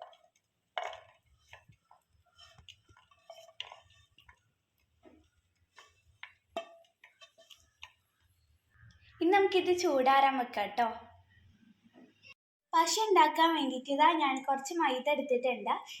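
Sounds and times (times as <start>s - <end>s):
spoon scraping and tapping pan: 0.0s - 9.0s.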